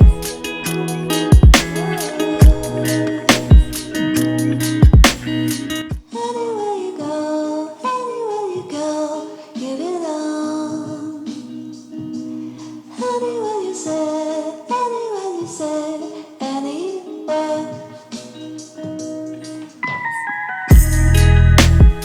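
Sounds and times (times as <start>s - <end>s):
song with high singing voice: 0.0s - 22.0s.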